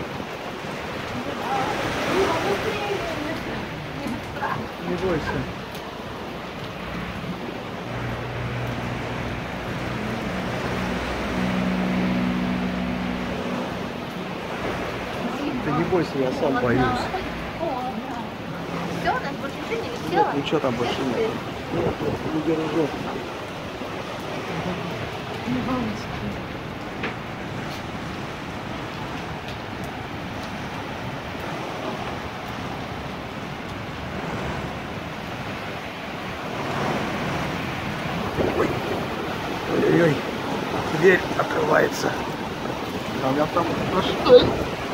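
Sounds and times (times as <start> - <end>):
heavy rain: 0.0 - 44.9
strong storm wind: 0.0 - 44.9
low steady drone: 7.8 - 15.8.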